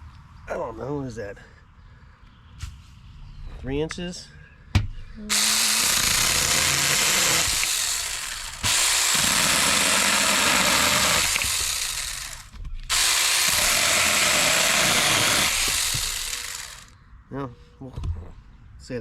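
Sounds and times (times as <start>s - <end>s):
chainsaw cutting wood: 5.3s - 16.9s.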